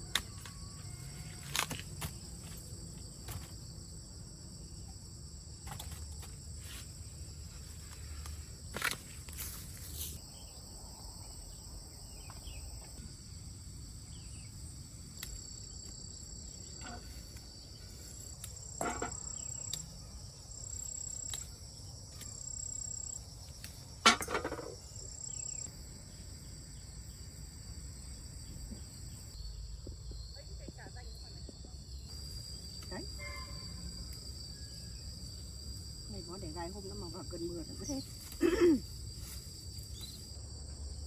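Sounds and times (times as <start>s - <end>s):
insects trilling: 0.0s - 41.0s.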